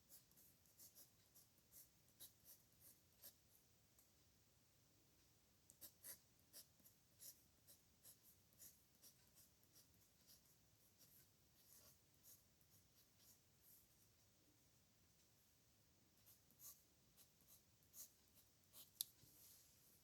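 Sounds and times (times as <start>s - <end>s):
pen scratching on paper: 0.0s - 3.4s, 5.8s - 14.0s, 16.2s - 19.0s.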